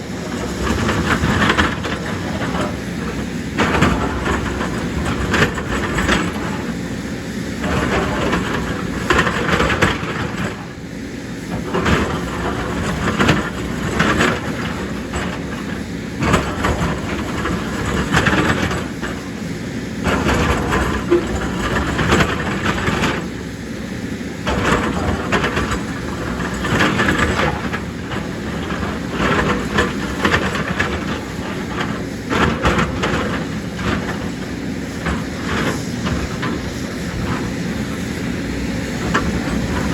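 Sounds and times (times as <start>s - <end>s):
machine knocks and rattles: 0.0s - 10.8s, 11.4s - 39.9s
excavator diesel engine under load: 0.0s - 39.9s.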